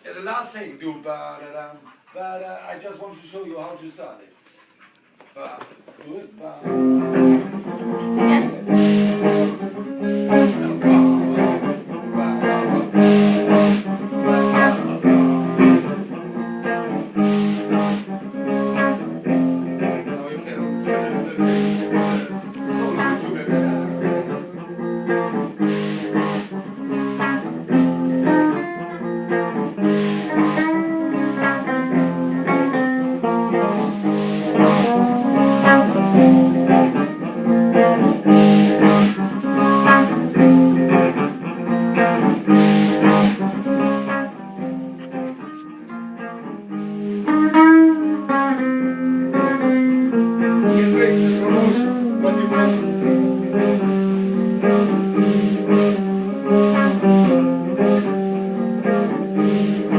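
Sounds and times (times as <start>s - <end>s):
guitar playing: 6.4s - 59.9s.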